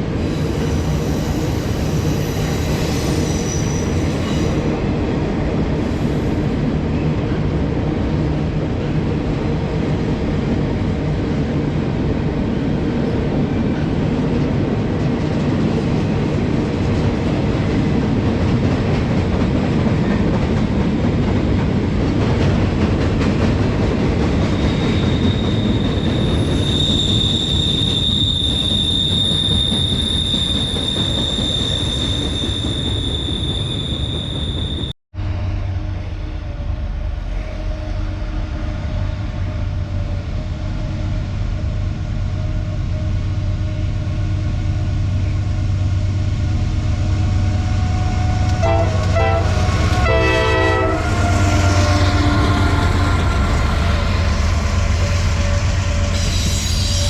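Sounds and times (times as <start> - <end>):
freight train wheels rumbling: 0.0 - 57.0
high wheel squeal: 0.2 - 4.7, 24.5 - 34.9, 47.8 - 57.0.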